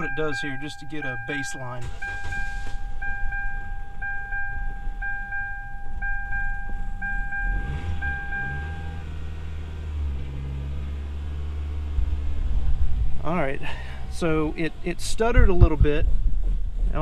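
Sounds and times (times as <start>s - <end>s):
car warning chime dinging: 0.0s - 9.1s
car engine cranking and idling: 0.0s - 17.0s.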